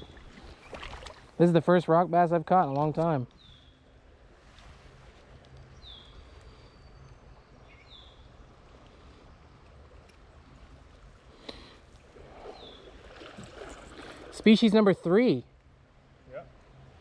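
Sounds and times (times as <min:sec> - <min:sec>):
flowing water: 0:00.0 - 0:02.0, 0:04.0 - 0:17.0
wind: 0:00.0 - 0:17.0
bird chirping: 0:02.6 - 0:03.8.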